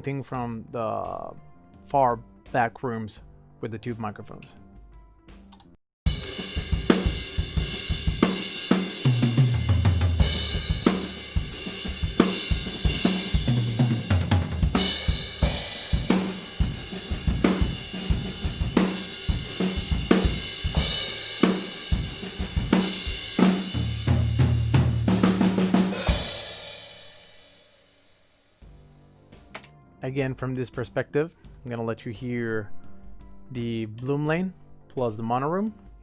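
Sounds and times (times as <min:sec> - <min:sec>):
acoustic drum kit groove: 0:04.8 - 0:29.7
low tom notes: 0:06.1 - 0:26.5.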